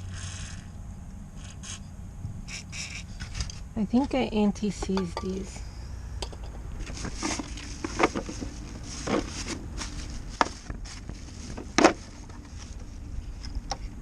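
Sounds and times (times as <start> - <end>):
hand tools and metal parts clattering: 6.2 - 12.7.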